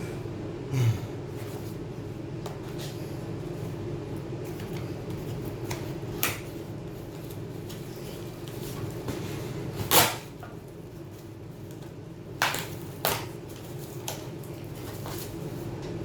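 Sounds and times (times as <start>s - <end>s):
steady low hum: 0.0s - 9.8s.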